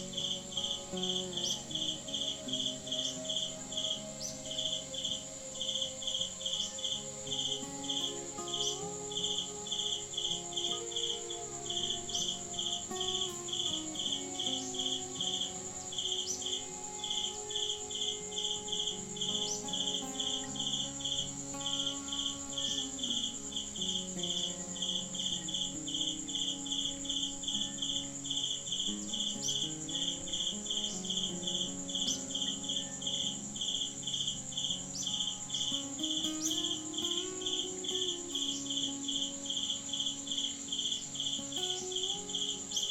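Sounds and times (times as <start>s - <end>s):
high-pitched whine: 0.0s - 30.1s
insects chirping: 0.0s - 42.9s
soft background music: 0.0s - 42.9s.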